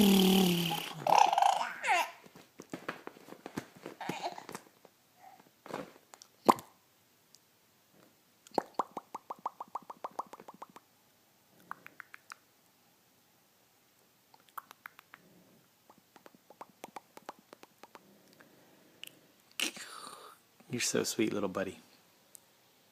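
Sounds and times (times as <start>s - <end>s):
pet clicking and popping: 8.7s - 10.9s, 11.6s - 12.4s, 14.4s - 15.3s, 15.9s - 18.1s.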